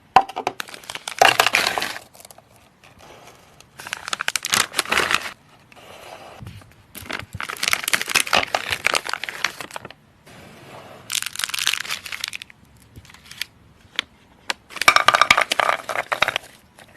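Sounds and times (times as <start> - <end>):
sweets crushed and crinkled: 0.6 - 2.6, 3.7 - 5.4, 7.0 - 10.0, 11.1 - 13.5.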